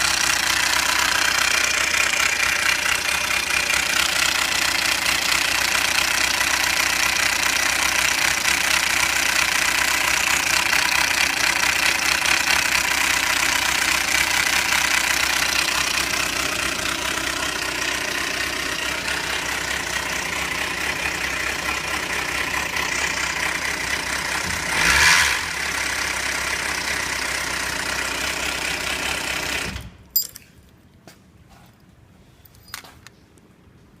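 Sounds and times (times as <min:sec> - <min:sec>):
motorcycle engine idling: 0:00.0 - 0:24.7.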